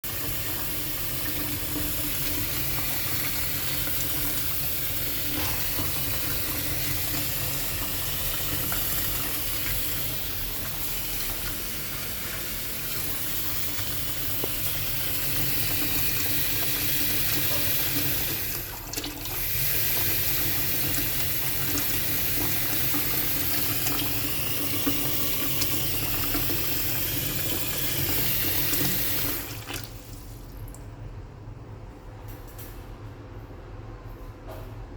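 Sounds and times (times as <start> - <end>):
water running from a tap: 0.0 - 30.8.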